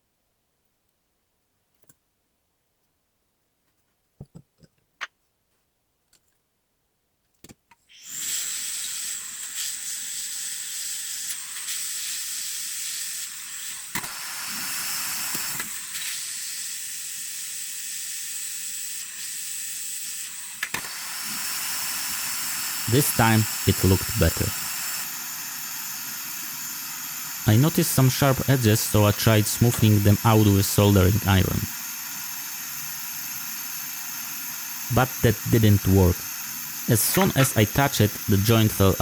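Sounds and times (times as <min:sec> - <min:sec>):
hot air gun blowing: 0:08.0 - 0:39.0.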